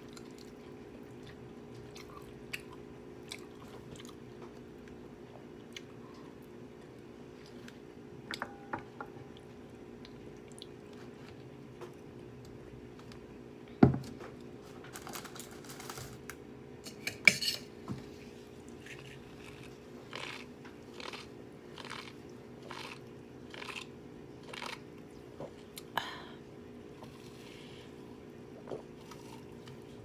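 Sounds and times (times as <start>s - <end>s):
chewing and crunching: 0.0s - 7.9s, 18.6s - 25.9s, 28.9s - 30.0s
clatter of cutlery or dishes: 16.9s - 17.7s.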